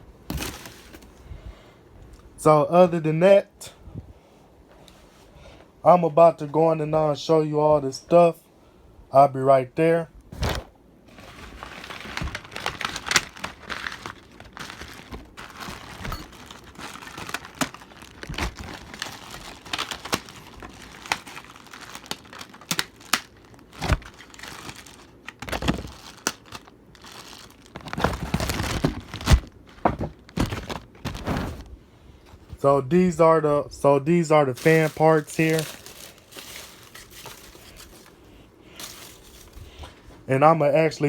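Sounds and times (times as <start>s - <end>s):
packaging crinkling and rustling: 0.3s - 1.2s, 10.4s - 31.7s, 34.5s - 40.2s.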